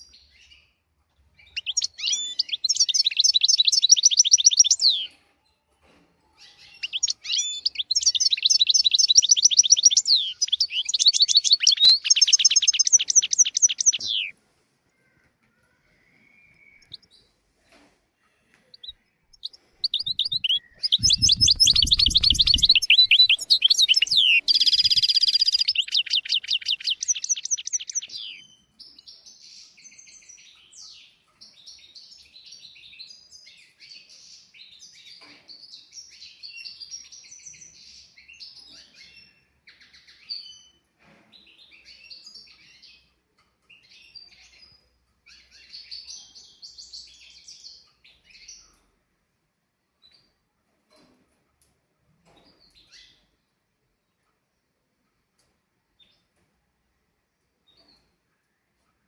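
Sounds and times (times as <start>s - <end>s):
goldfinch twittering song: 1.4s - 5.1s, 6.6s - 14.3s, 18.7s - 28.6s.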